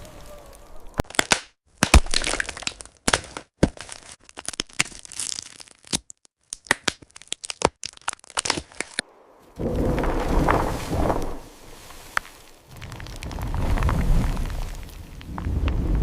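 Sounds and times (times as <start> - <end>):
wood cracking and splintering: 0.0 - 16.0
steady rushing noise: 9.0 - 16.0.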